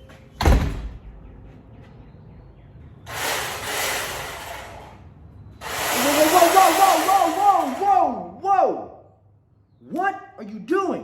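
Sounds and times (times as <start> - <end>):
door shutting with a thud: 0.4 - 1.0
loud hissing: 5.6 - 8.0.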